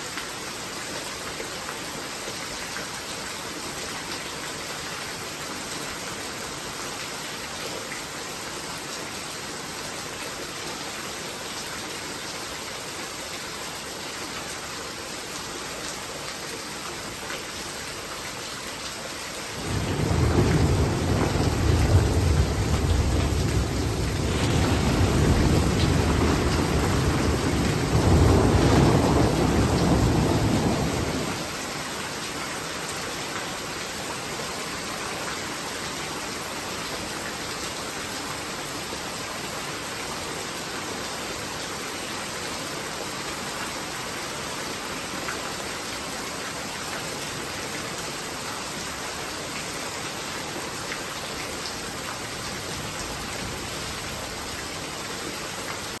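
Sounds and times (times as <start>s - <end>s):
steady rain hissing: 0.0s - 56.0s
low rumble of thunder: 19.6s - 31.4s, 52.3s - 54.6s.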